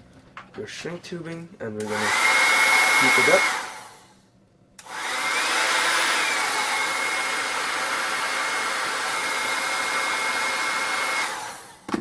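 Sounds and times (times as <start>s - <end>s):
hot-air blower whine and rush: 1.8s - 4.2s, 4.8s - 12.0s.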